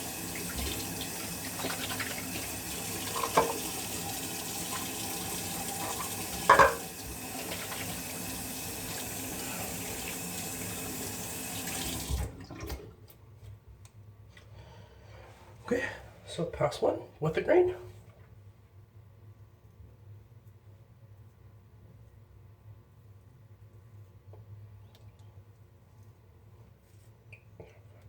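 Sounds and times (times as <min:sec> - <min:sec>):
water running from tap: 0:00.0 - 0:12.8
knocks in sink basin: 0:03.2 - 0:03.6, 0:06.4 - 0:06.9.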